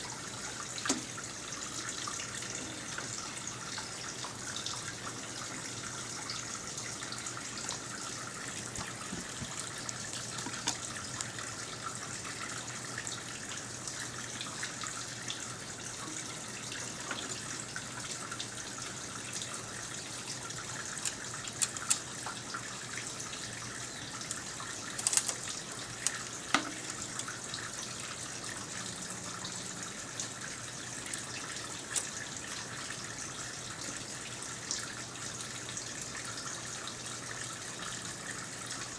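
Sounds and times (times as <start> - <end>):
running water: 0.0 - 38.9.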